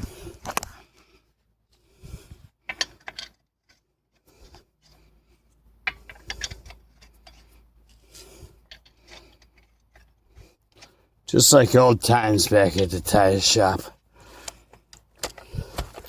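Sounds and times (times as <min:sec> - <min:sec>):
metallic clicks and rattles: 0:02.6 - 0:03.8, 0:05.8 - 0:07.6.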